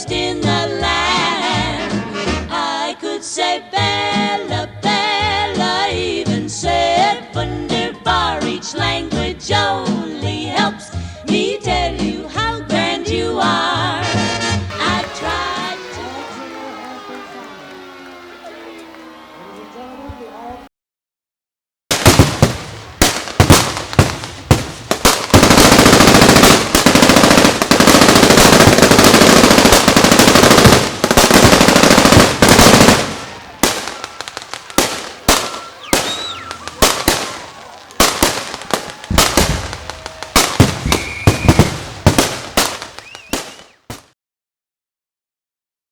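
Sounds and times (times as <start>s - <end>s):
machine-gun fire: 21.9s - 44.1s.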